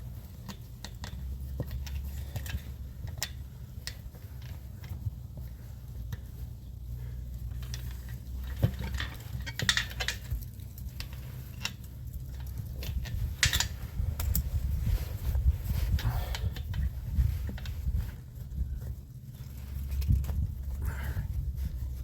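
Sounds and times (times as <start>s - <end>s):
steady low hum: 0.0s - 22.0s
metallic clinks and knocks: 7.3s - 14.5s.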